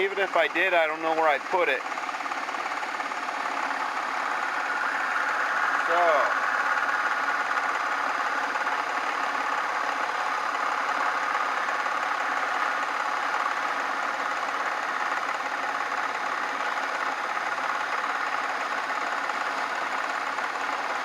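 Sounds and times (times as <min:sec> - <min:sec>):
metal lathe whirring: 0:01.4 - 0:21.0.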